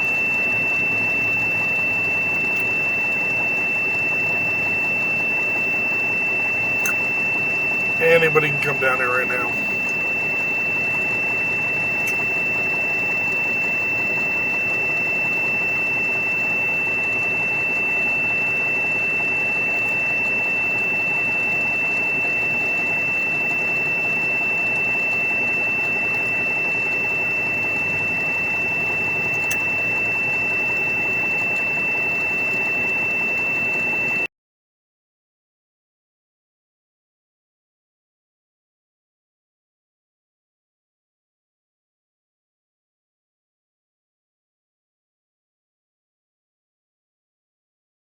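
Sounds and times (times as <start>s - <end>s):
high-pitched electronic whine: 0.0s - 34.3s
constant hiss and hum: 6.5s - 14.3s.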